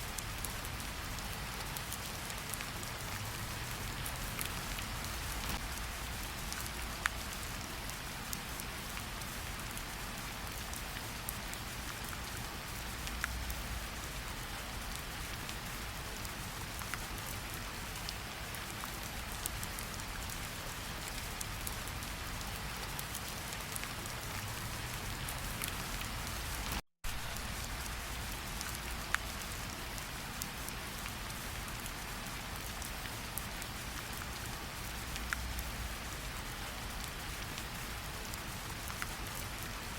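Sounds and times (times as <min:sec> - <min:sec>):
steady rain hiss: 0:00.0 - 0:39.9
raindrop ticks: 0:00.1 - 0:07.9, 0:21.0 - 0:29.8, 0:30.5 - 0:36.1.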